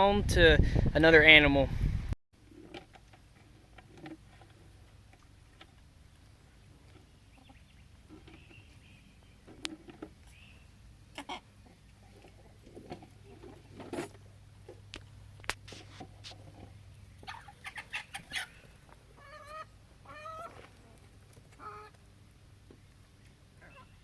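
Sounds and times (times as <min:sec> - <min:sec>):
chicken clucking: 0:17.2 - 0:20.7, 0:21.5 - 0:22.0.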